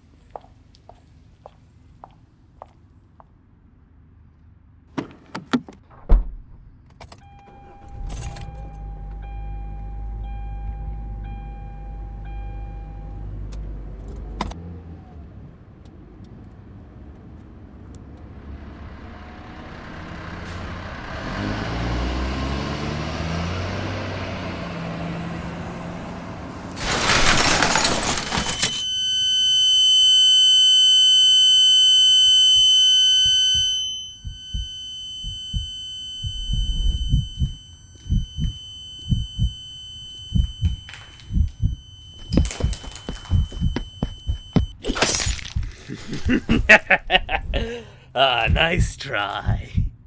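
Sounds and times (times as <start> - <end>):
car pulling away: 19.5 - 26.8
dashboard warning chime: 26.8 - 44.7.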